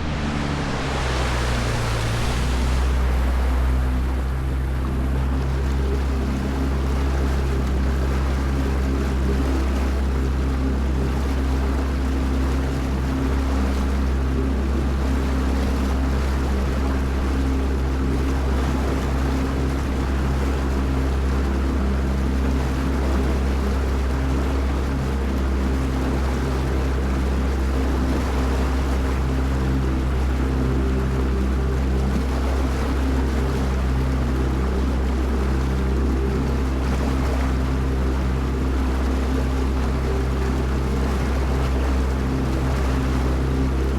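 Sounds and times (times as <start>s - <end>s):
motorboat engine humming: 0.0s - 43.9s
water rushing past hull: 0.0s - 43.9s
wind: 0.0s - 43.9s.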